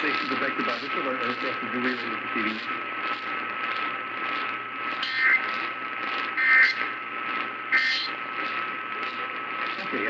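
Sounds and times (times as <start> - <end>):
radio static: 0.0 - 10.0
steady high whine: 0.0 - 10.0
digital warbling data bursts: 4.9 - 7.0, 7.7 - 10.0.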